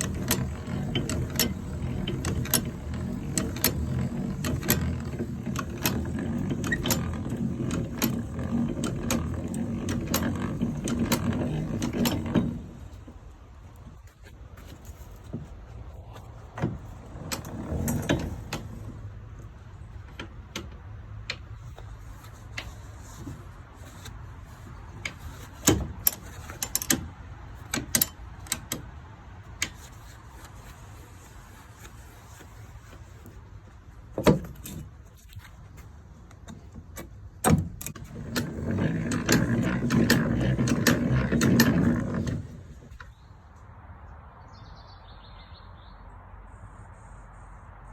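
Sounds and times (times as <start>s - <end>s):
metallic clicks and knocks: 0.0s - 15.5s, 16.5s - 23.4s, 24.8s - 30.6s, 34.1s - 35.5s, 36.3s - 43.1s.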